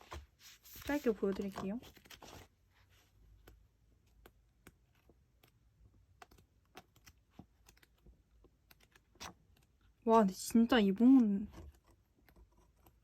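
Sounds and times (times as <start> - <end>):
book pages flipping: 0.0 - 9.9.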